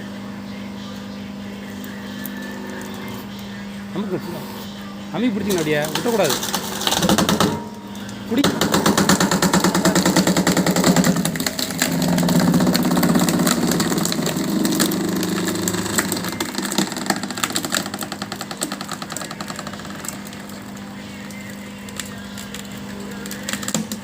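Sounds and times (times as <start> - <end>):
wood chipper hum: 1.0 - 24.0
wood clattering in chipper: 5.4 - 24.0.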